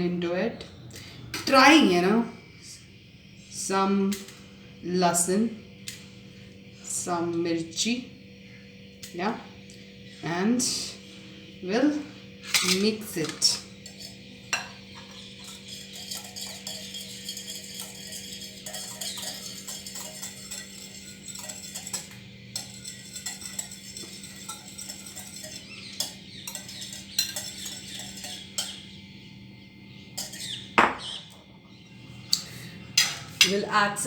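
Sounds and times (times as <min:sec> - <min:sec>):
spoon whisking batter in bowl: 0:13.8 - 0:28.9
spoon knocking bowl: 0:30.2 - 0:31.2.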